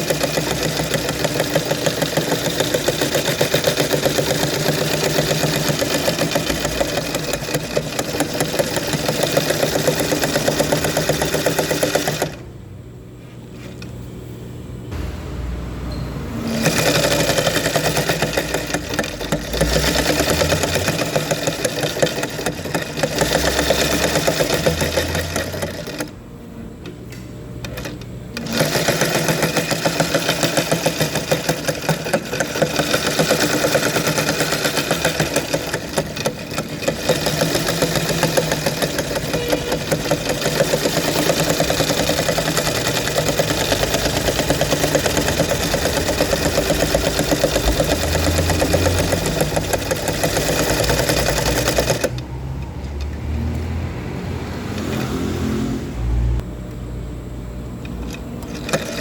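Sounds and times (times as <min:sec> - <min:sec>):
sewing machine running: 0:00.0 - 0:12.5, 0:16.4 - 0:26.2, 0:27.6 - 0:53.6, 0:54.2 - 0:55.8, 0:58.0 - 0:59.0.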